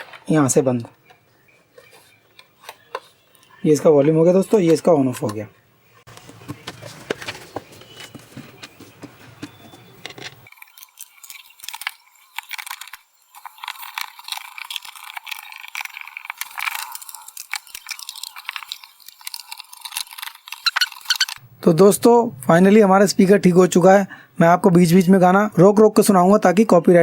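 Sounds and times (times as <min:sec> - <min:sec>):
thin crackling: 0:06.0 - 0:21.4.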